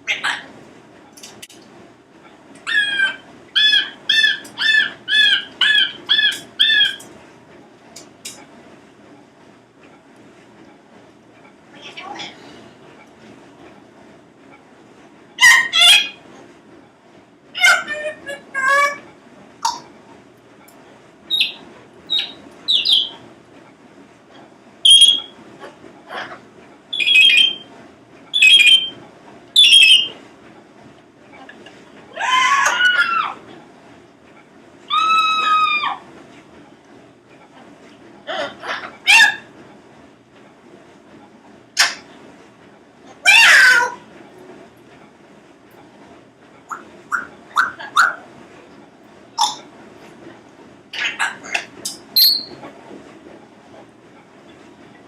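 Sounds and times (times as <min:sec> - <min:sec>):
parrot calling: 0:00.0 - 0:00.5, 0:02.6 - 0:07.0, 0:15.4 - 0:16.2, 0:17.6 - 0:19.0, 0:21.3 - 0:23.2, 0:24.9 - 0:25.4, 0:26.1 - 0:27.7, 0:28.3 - 0:29.0, 0:29.6 - 0:30.2, 0:32.1 - 0:33.4, 0:34.9 - 0:36.0, 0:38.3 - 0:39.5, 0:41.8 - 0:42.0, 0:43.2 - 0:44.0, 0:46.7 - 0:48.3, 0:49.4 - 0:49.7, 0:50.9 - 0:52.6.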